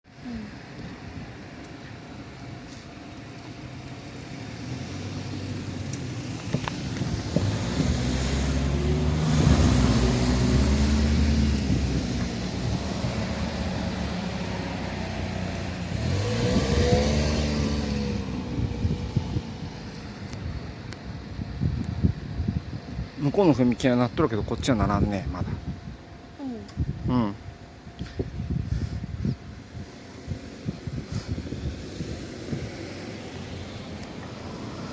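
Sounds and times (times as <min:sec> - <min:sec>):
vehicle engine passing: 0:04.2 - 0:20.8, 0:30.0 - 0:34.9.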